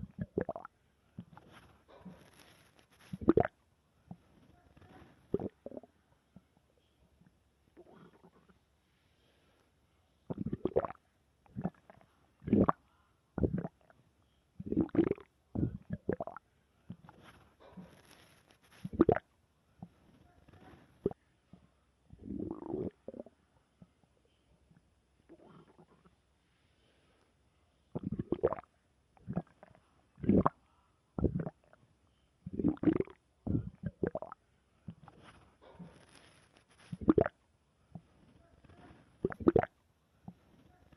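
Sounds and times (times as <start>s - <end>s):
stomach growling: 0.0s - 6.0s, 7.8s - 8.6s, 10.3s - 14.0s, 14.6s - 21.2s, 22.1s - 23.4s, 25.3s - 26.1s, 27.9s - 30.6s, 31.2s - 31.8s, 32.4s - 40.9s.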